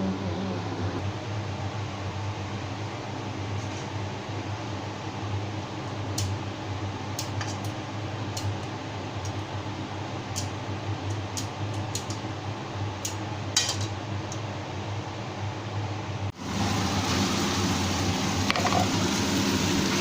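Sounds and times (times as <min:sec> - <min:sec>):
low hum: 0:00.0 - 0:01.3.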